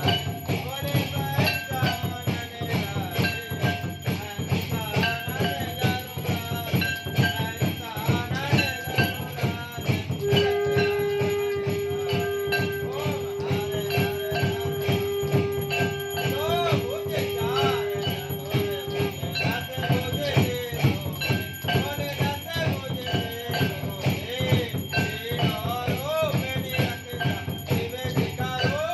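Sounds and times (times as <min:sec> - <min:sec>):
devotional singing: 0:00.0 - 0:28.9
jingling bells: 0:00.0 - 0:28.9
long held note: 0:10.2 - 0:19.5.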